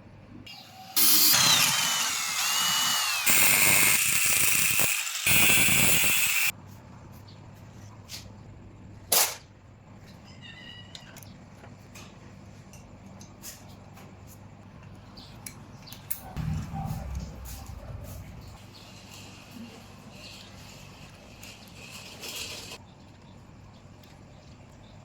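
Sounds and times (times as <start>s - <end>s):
power tool working metal: 0.5s - 6.5s.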